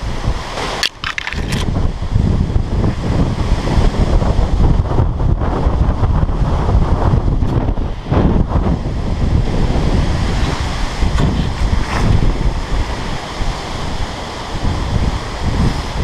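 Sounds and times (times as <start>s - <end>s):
strong wind gusting: 0.0s - 16.0s
wind buffeting microphone: 0.0s - 16.0s.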